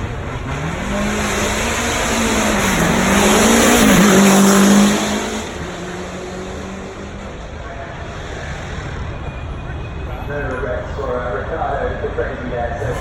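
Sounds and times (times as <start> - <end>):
car engine passing by: 0.0 - 9.1.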